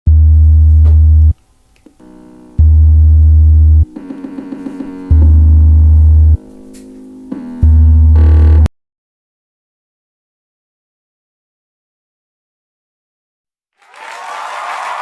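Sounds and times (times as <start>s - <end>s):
deep synthesizer bass note: 0.1s - 1.4s, 2.0s - 6.5s, 7.3s - 8.7s
keyboard phrases: 1.9s - 8.7s.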